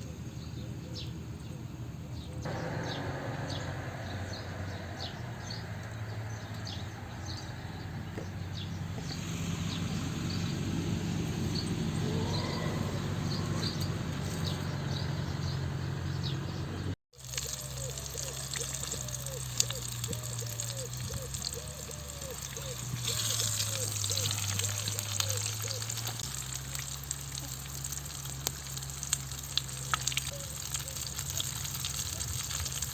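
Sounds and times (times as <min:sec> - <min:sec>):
small birds chirping: 0:00.0 - 0:32.9
steady low hum: 0:01.4 - 0:15.6.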